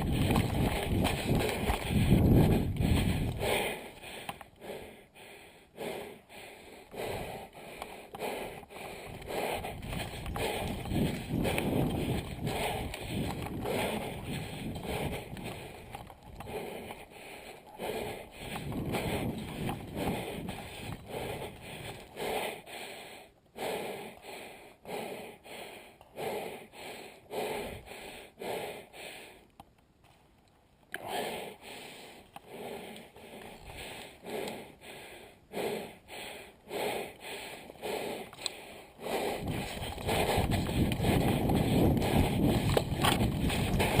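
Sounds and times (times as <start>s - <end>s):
person breathing heavily: 0.0s - 29.5s, 31.0s - 44.0s.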